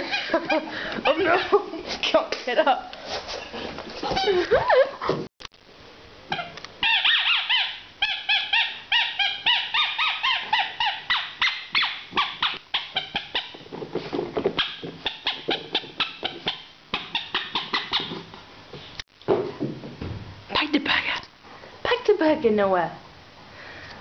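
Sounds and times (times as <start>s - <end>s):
squeaky toy squeaking: 6.3s - 13.6s, 14.6s - 18.3s.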